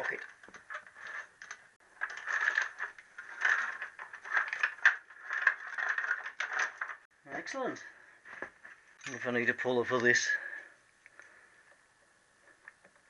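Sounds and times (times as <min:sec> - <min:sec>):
roller chain rattling: 0:00.0 - 0:07.1.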